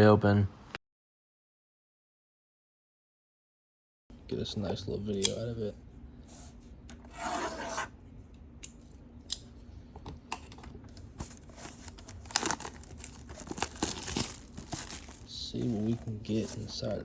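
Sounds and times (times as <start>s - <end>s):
plastic crinkling and scraping: 11.1s - 17.0s
plastic wrap ripping: 11.4s - 15.9s.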